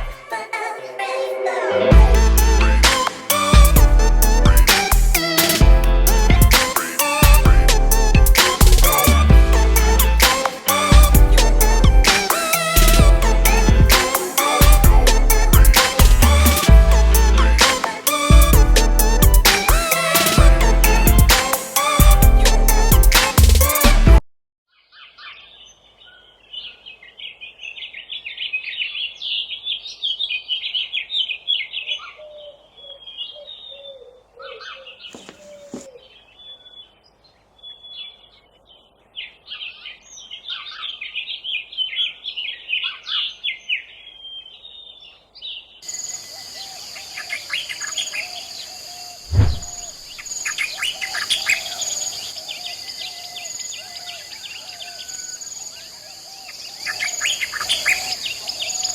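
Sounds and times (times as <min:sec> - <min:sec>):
high-pitched drone: 0:00.0 - 0:24.1
songbirds chirping: 0:24.7 - 0:58.9
low thump: 0:49.3 - 0:50.0.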